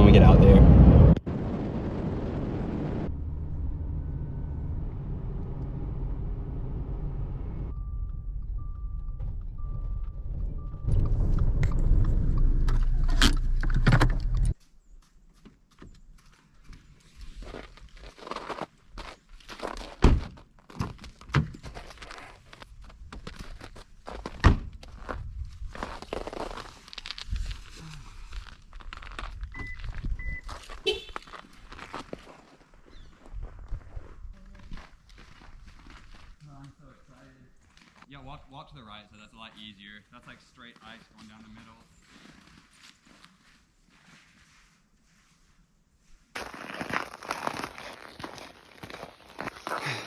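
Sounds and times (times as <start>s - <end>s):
car road and engine noise: 0.0s - 14.6s
faint beep: 7.7s - 12.4s, 29.6s - 31.0s
footsteps crunching on icy ground: 14.6s - 38.1s, 40.2s - 44.9s, 46.3s - 50.0s.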